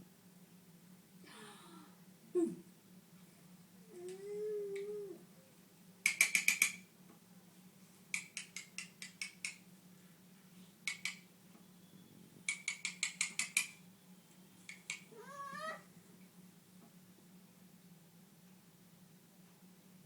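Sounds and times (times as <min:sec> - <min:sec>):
low steady hum: 0:00.0 - 0:06.1, 0:13.7 - 0:20.0
bursts of rapid clicks: 0:06.0 - 0:06.8, 0:12.5 - 0:13.8.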